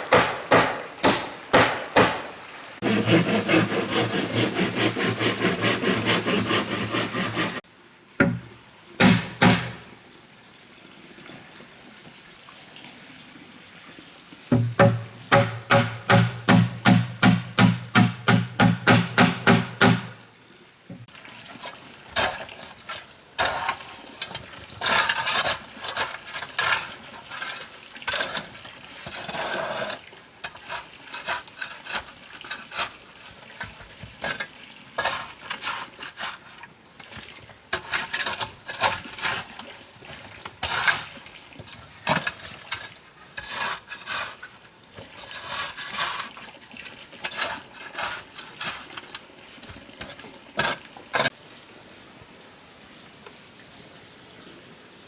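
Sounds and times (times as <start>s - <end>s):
pots and utensils clattering: 21.5s - 46.6s, 47.2s - 51.4s.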